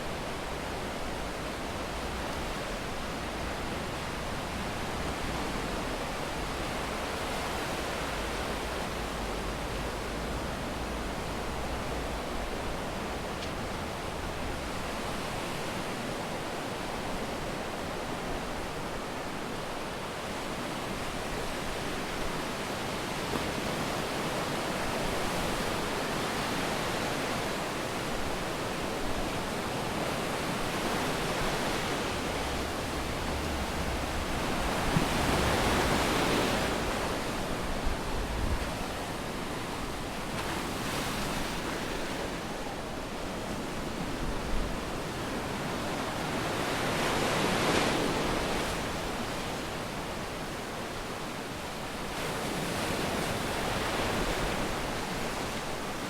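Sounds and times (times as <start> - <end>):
sea waves on beach: 20.5 - 50.8
wave breaking: 30.8 - 38.6.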